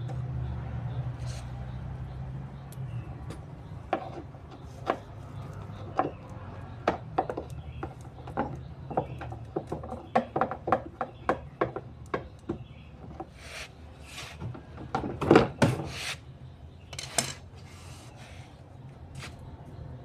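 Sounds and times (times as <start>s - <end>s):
scraping and rubbing: 13.2s - 14.7s, 15.5s - 16.3s, 17.0s - 19.5s.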